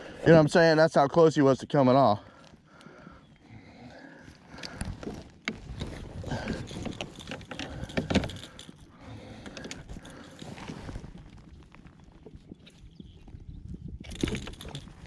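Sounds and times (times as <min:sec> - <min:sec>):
rustling: 0:04.2 - 0:12.9.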